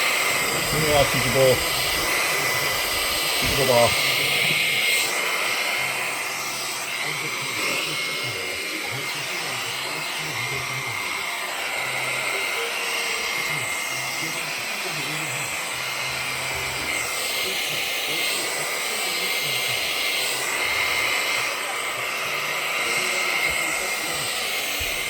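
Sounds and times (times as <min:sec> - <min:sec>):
vacuum cleaner hissing with high whine: 0:00.0 - 0:25.0.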